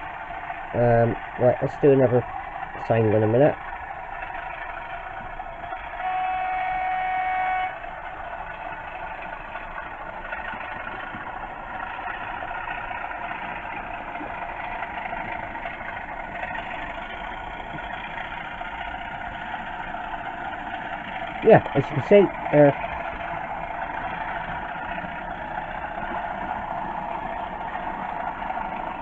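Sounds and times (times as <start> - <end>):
model diesel engine sound: 0.0 - 29.0
locomotive horn: 5.7 - 7.9.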